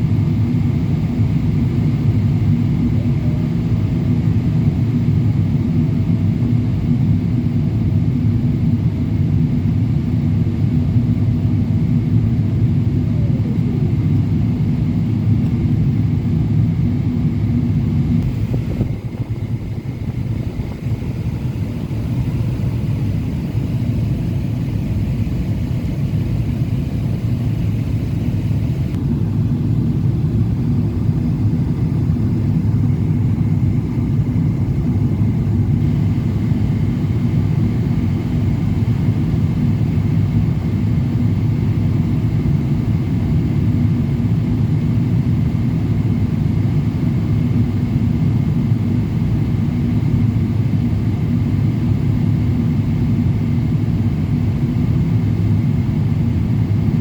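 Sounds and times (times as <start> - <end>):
airplane cabin engine rumble: 0.0 - 57.0
steady hums: 17.8 - 38.2.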